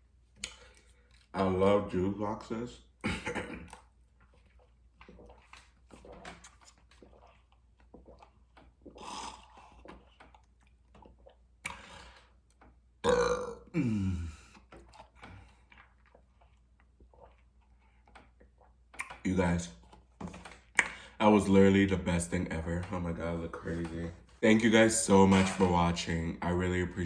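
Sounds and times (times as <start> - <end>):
person belching: 13.0 - 14.5.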